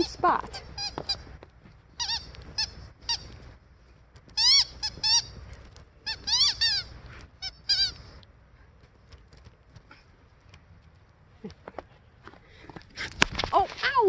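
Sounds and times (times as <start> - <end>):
squeaky dog toy squeaking: 0.0 - 1.3, 2.0 - 3.3, 4.3 - 5.4, 6.0 - 8.0.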